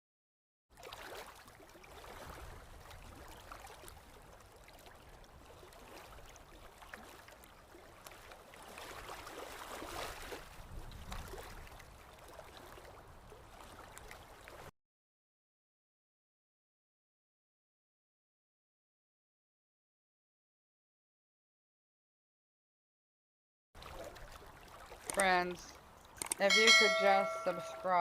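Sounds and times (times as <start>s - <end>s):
stream babbling: 23.8s - 28.0s.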